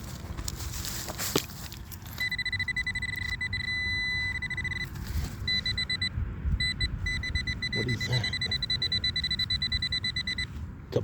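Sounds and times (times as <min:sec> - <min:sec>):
metal detector pulsing beeps: 0:02.2 - 0:10.6
metal detector tone: 0:02.2 - 0:10.6.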